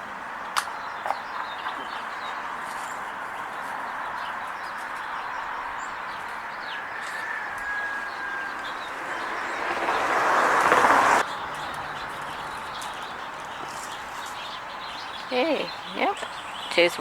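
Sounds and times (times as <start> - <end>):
small birds chirping: 0.0 - 17.0
outdoor background hiss: 8.0 - 17.0.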